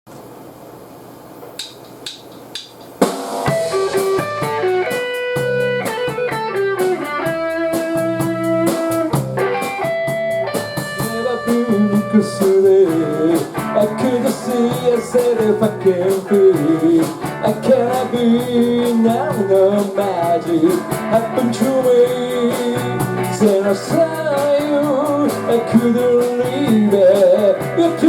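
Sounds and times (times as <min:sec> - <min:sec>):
drum kit playing: 0:01.4 - 0:28.0
sharp clicks: 0:01.5 - 0:03.0
electric guitar playing: 0:03.4 - 0:28.0.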